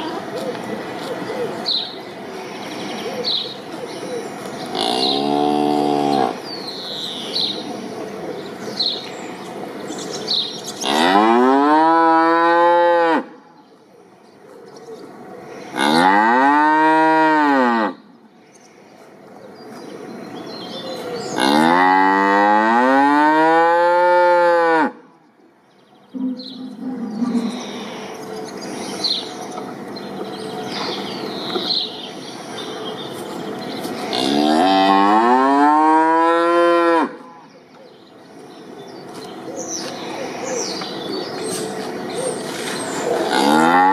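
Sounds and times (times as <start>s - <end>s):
birds chirping: 0.0s - 16.6s, 17.8s - 23.2s, 25.0s - 43.9s
cow mooing: 4.7s - 6.4s, 10.8s - 13.3s, 15.8s - 18.0s, 21.4s - 25.0s, 34.1s - 37.2s, 43.2s - 43.9s.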